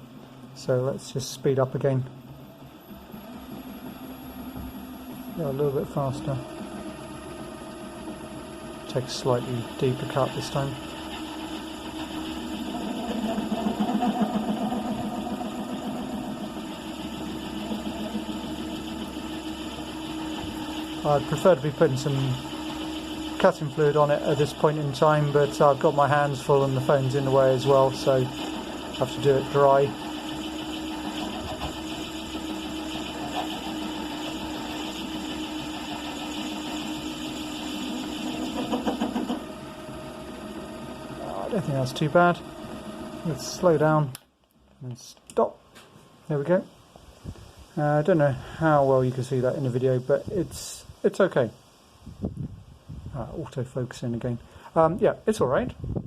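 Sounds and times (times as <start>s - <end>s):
lathe motor humming: 0.0s - 44.2s
lathe tool cutting flutter: 2.3s - 44.1s.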